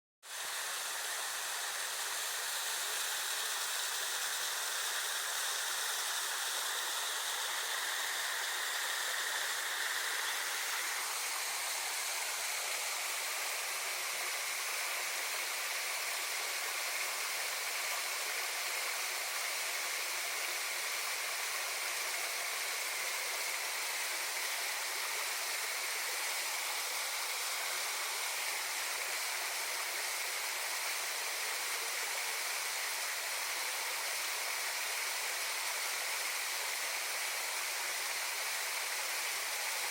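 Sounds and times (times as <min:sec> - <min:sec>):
small waterfall splashing: 0:00.2 - 0:39.9.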